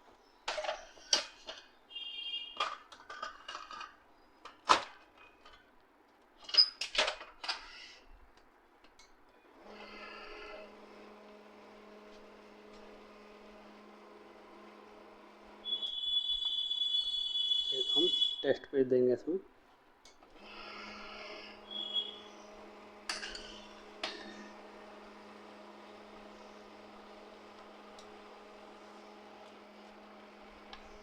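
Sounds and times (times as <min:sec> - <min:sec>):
printer motor humming: 0:09.6 - 0:18.1, 0:20.3 - 0:31.0.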